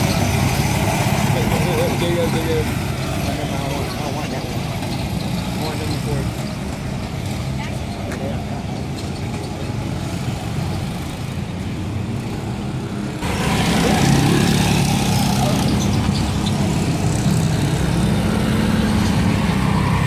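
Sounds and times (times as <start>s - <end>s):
go-kart engine running: 0.0s - 20.0s.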